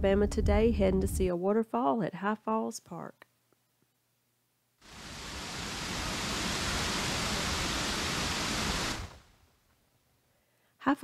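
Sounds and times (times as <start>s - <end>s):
waterfall rushing: 4.9s - 9.4s.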